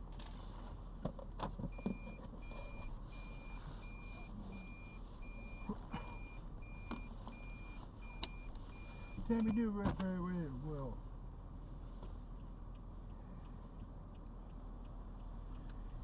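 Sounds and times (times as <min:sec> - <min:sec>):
electronic warning beeper: 0:01.8 - 0:09.6.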